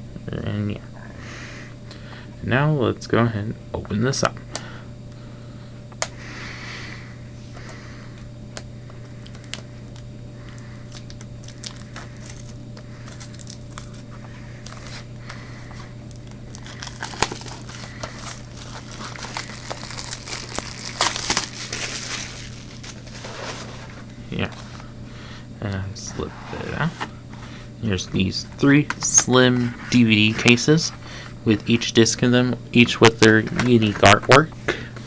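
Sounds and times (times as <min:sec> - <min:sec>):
plastic shrink-wrap crinkling: 0:09.2 - 0:10.0, 0:10.9 - 0:24.0.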